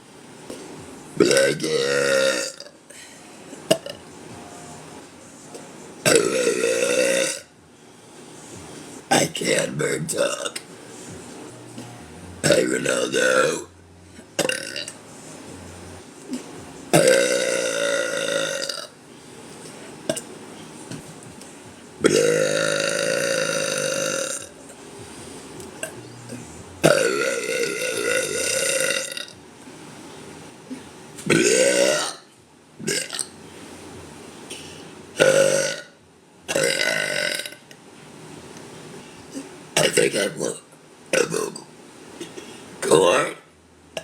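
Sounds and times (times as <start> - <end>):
woman burping: 6.1 - 7.5, 14.4 - 14.9, 17.0 - 18.9, 22.0 - 24.5, 25.8 - 29.2, 30.7 - 32.2.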